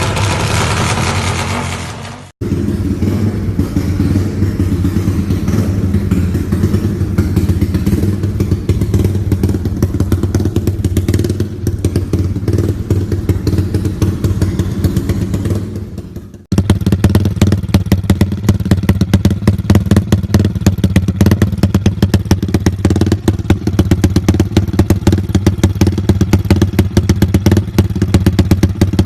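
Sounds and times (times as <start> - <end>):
fast clattery rattle: 0.0 - 2.3
motorcycle engine idling: 2.4 - 29.0.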